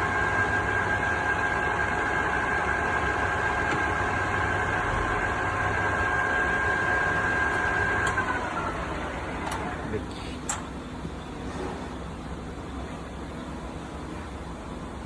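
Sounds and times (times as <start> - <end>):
lathe running with whine: 0.0 - 10.1.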